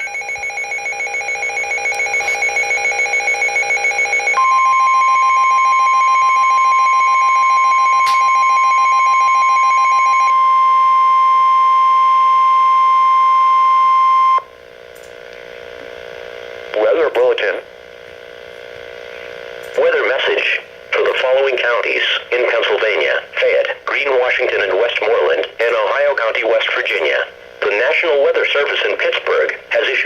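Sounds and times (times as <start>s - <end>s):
rapidly pulsing electronic beeping: 0.0s - 10.3s
steady single-pitched alarm tone: 0.0s - 14.5s.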